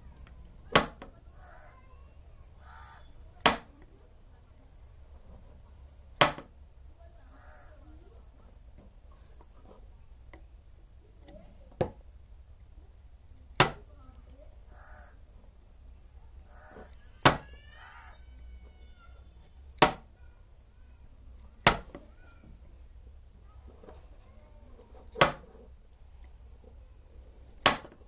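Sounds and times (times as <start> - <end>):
faint chirping: 6.9 - 11.6, 15.9 - 28.0.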